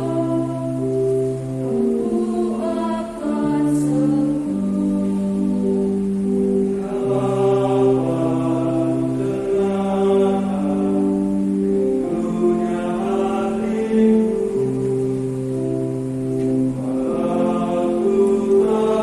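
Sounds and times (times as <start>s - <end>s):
choir singing a hymn: 0.0s - 19.0s.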